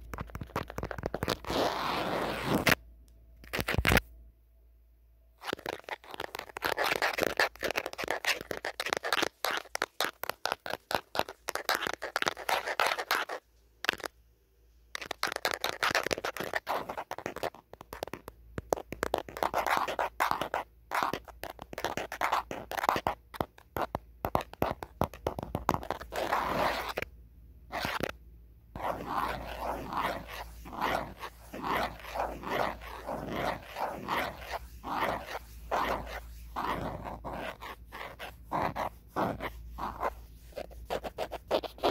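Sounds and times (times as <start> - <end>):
fingernails scratching and tapping phone: 0.0 - 2.8, 3.4 - 4.0, 5.4 - 14.1, 14.9 - 27.1, 27.7 - 28.2, 28.8 - 41.9.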